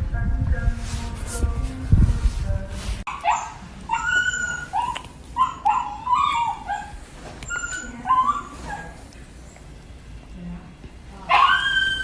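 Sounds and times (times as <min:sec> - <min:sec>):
puppy whimpering and yipping: 0:03.1 - 0:09.0, 0:11.3 - 0:12.0.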